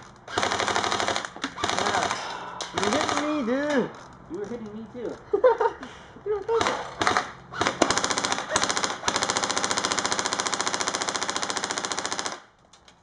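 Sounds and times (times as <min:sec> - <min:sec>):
electric rifle automatic fire: 0:00.3 - 0:02.2, 0:02.8 - 0:03.4, 0:06.6 - 0:12.5.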